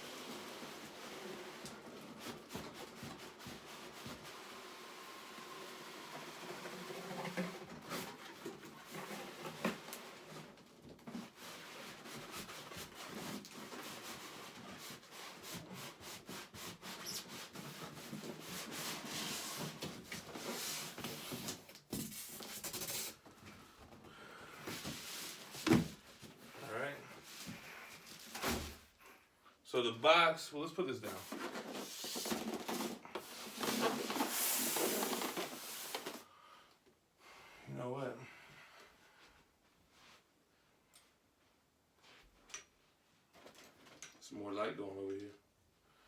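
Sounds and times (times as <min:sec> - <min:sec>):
cardboard box rubbing and scraping: 0:06.2 - 0:23.2, 0:31.1 - 0:36.2.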